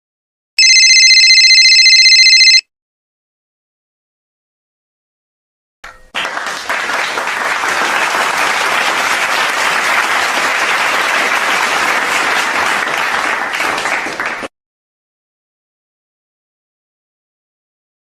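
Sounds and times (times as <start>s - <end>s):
audience applause: 6.1s - 14.5s.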